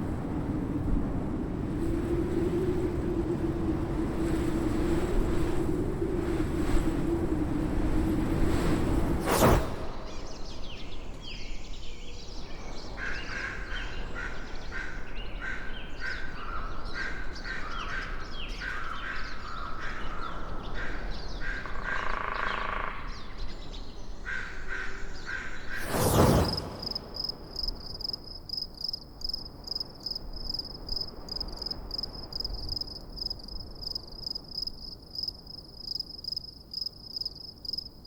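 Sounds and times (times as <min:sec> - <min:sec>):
whoosh: 0:08.9 - 0:10.7, 0:25.7 - 0:28.5.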